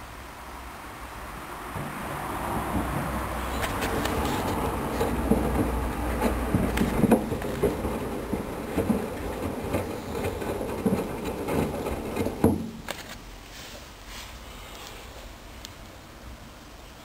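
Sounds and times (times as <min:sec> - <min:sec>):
knocks in washing machine: 0:01.8 - 0:03.6, 0:04.5 - 0:12.9
washing machine drum turning: 0:01.8 - 0:12.9.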